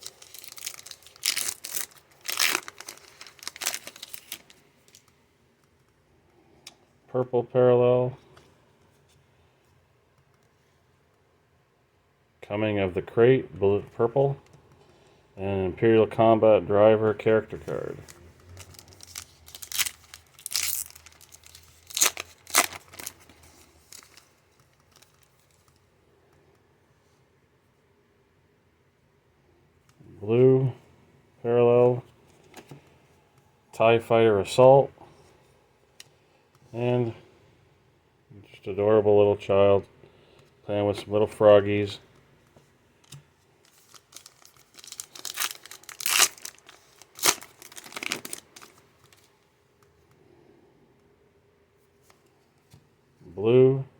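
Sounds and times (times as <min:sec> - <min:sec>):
foil wrapper ripping and crinkling: 0:00.0 - 0:05.0, 0:17.7 - 0:25.6, 0:43.0 - 0:49.3.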